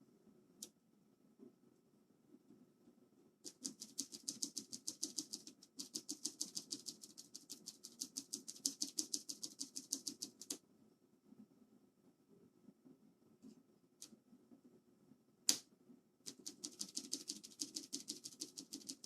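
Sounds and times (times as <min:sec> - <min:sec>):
keyboard switch clicking rapidly: 0:03.5 - 0:10.6, 0:16.3 - 0:19.0.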